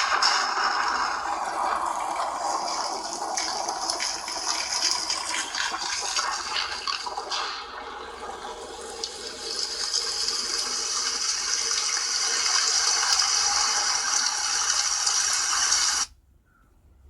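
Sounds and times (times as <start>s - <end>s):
water-like rushing from phone speaker: 0.0s - 16.1s.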